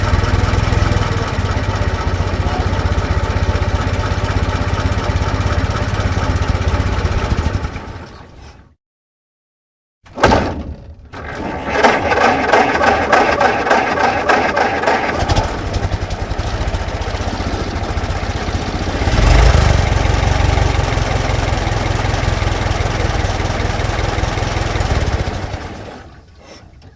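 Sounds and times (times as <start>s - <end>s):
car engine cranking and starting: 11.1s - 26.2s.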